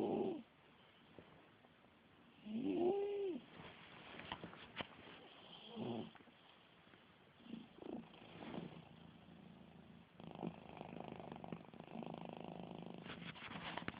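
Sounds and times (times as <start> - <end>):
cat snoring: 0.0 - 0.4, 2.4 - 3.4, 5.3 - 6.2, 7.4 - 13.2.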